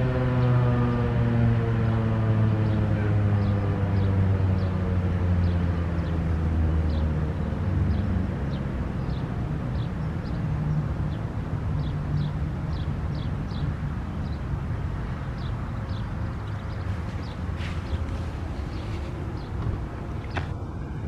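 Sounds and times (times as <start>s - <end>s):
warning siren winding down: 0.0s - 4.1s
steady low rumble: 0.0s - 21.0s.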